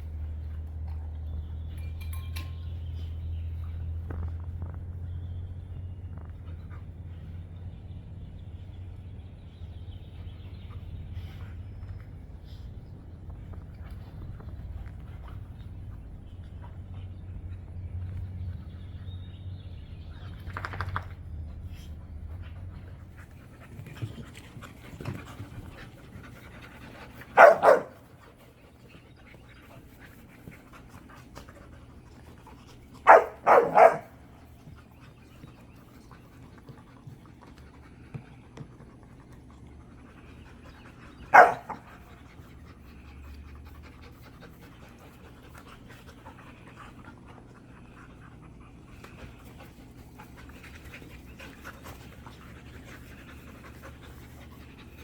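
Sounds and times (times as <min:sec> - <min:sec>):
dogs panting: 0:02.8 - 0:55.0
dog barking: 0:27.4 - 0:28.0, 0:33.0 - 0:34.2, 0:41.3 - 0:41.8.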